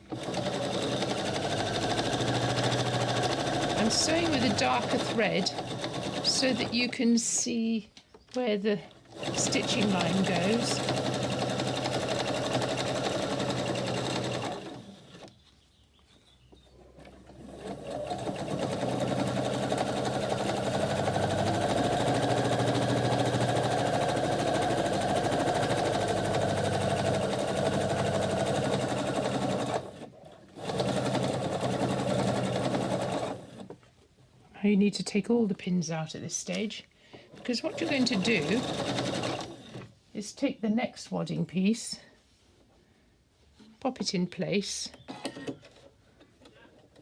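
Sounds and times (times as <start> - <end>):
sewing machine stitching: 0.0 - 7.0, 9.1 - 15.3, 17.0 - 33.8, 37.4 - 39.9.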